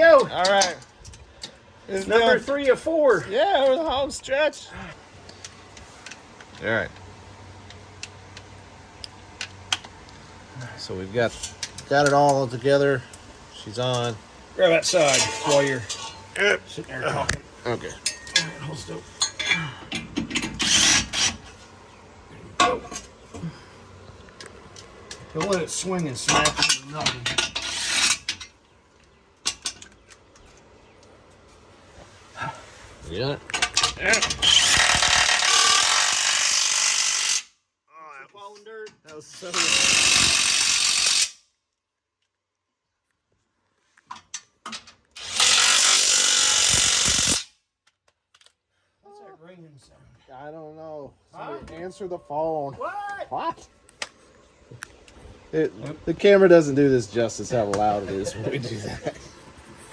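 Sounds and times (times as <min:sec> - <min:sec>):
metal tools knocking: 0:14.8 - 0:16.4, 0:18.0 - 0:20.7
ratchet wrench clicking: 0:33.8 - 0:37.5, 0:39.5 - 0:41.4, 0:45.2 - 0:47.5.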